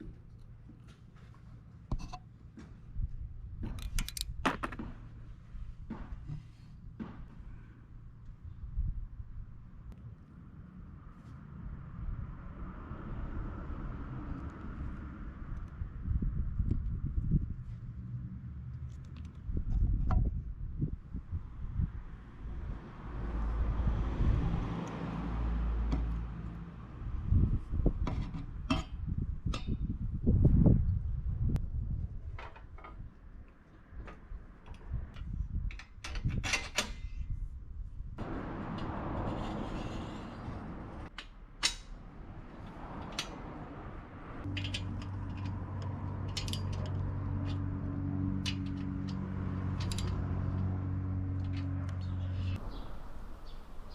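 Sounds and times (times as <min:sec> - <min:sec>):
vehicle engine passing by: 0:11.0 - 0:16.0, 0:21.8 - 0:27.6, 0:38.2 - 0:41.1, 0:42.0 - 0:53.9
metal tools clinking: 0:44.5 - 0:45.6, 0:46.2 - 0:47.6.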